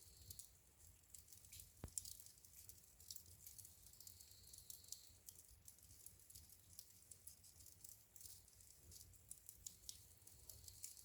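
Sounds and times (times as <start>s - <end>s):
wood fire crackling: 0.0s - 11.0s
fire popping: 1.2s - 4.0s.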